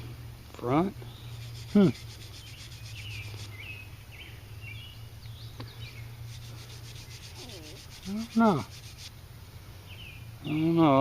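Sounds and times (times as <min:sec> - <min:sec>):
steady low hum: 0:00.0 - 0:11.0
bird chirping: 0:00.9 - 0:11.0
insect rapid pulsing call: 0:01.1 - 0:05.2, 0:06.1 - 0:09.3.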